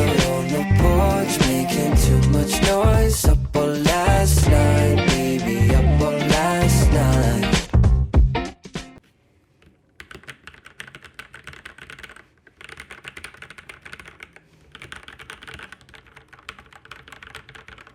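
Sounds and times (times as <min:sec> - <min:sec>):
fast typing on mechanical keyboard: 0:10.0 - 0:17.9.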